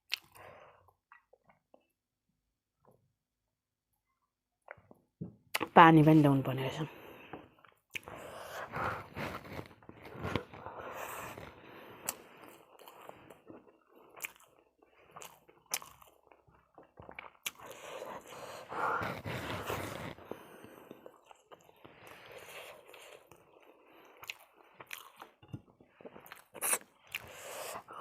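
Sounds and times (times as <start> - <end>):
chewing crispy fried chicken: 8.9 - 27.6.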